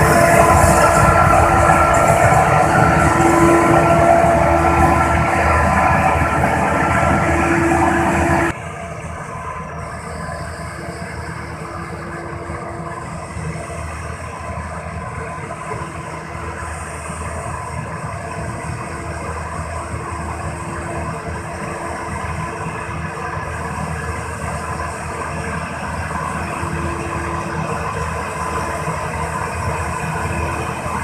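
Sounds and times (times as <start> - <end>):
road compactor engine running: 0.0 - 8.6.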